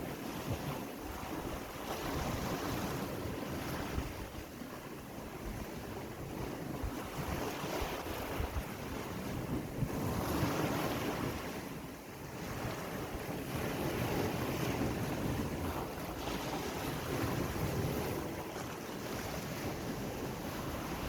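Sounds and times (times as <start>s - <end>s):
waves washing on shore: 0.0s - 21.0s
wind buffeting microphone: 0.0s - 21.0s.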